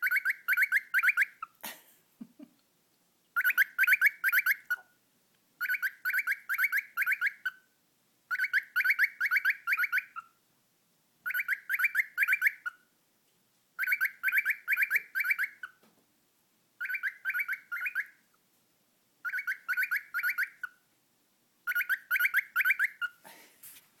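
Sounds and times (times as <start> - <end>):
cockatiel calling: 0.0 - 1.6, 3.4 - 4.9, 5.6 - 7.7, 8.3 - 10.4, 11.2 - 12.9, 13.8 - 15.8, 16.8 - 18.3, 19.2 - 20.8, 21.6 - 23.2.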